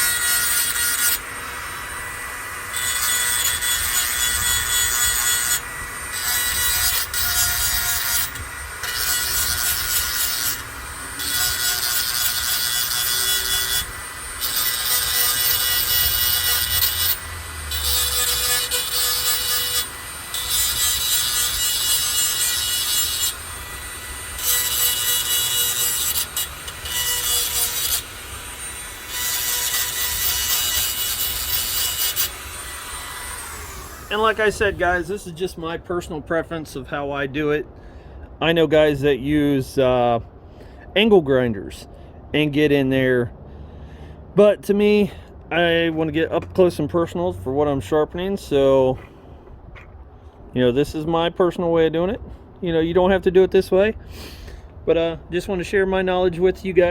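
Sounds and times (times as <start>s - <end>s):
hand file rasping on steel blade: 2.7s - 10.6s, 11.2s - 23.5s, 24.4s - 33.5s.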